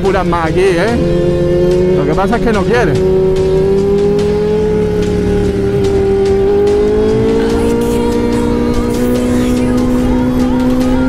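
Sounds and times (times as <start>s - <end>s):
motorcycle engine cruising: 0.0s - 11.0s.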